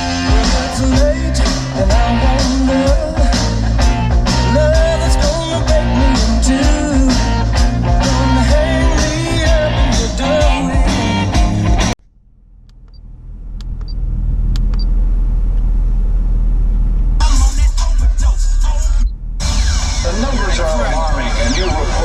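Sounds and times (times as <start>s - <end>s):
song with heavy bass on car stereo: 0.0s - 12.0s, 17.1s - 22.0s.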